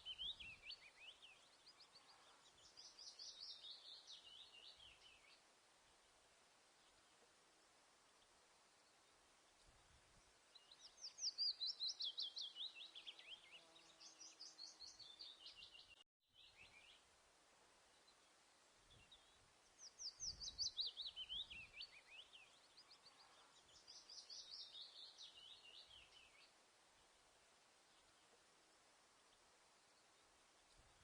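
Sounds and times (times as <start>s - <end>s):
songbird singing fast trills: 0.0s - 5.4s, 10.5s - 17.0s, 17.9s - 27.1s.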